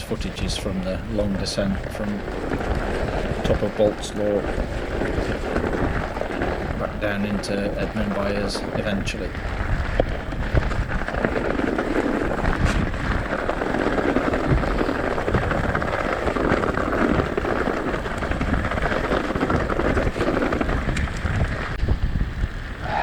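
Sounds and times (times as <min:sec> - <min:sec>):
bike rattles and clicks: 0:00.0 - 0:22.8
tyres rushing on wet trail: 0:00.0 - 0:23.0
wind buffeting microphone: 0:00.0 - 0:23.0.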